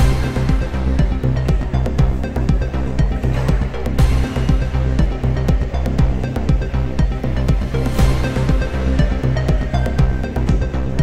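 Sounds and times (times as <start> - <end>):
electronic music with heavy bass: 0.0 - 11.0.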